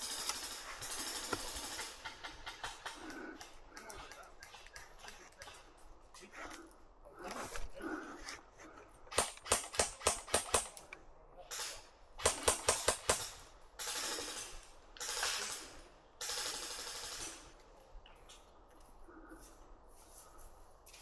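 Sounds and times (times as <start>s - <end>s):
airsoft gun shots: 9.1s - 10.8s, 12.2s - 13.3s.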